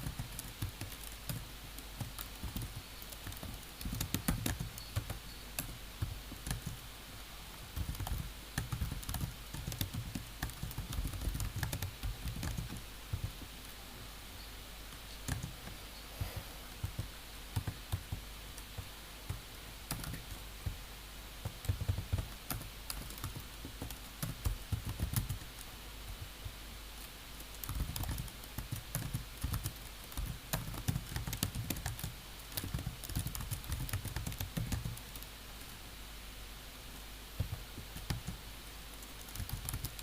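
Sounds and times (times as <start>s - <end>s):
typing on computer keyboard: 0.0s - 6.8s, 7.7s - 13.4s, 15.2s - 15.8s, 16.8s - 20.8s, 21.4s - 25.6s, 27.4s - 35.3s, 37.4s - 40.0s
steady low hum: 0.0s - 40.0s.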